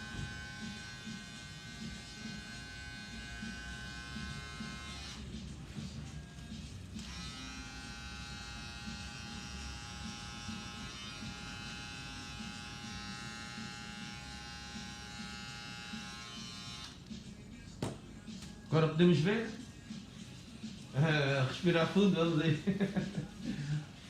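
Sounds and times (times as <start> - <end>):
electric hair clippers buzzing: 0.0 - 5.3, 6.9 - 17.1.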